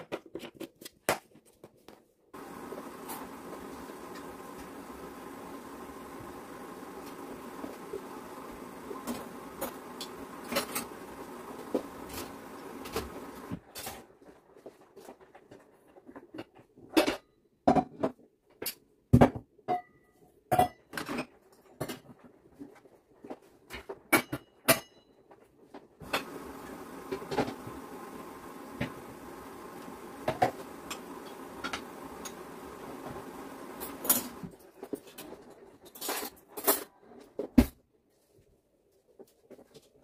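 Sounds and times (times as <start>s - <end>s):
steady low hum: 2.4s - 13.6s, 26.0s - 34.5s.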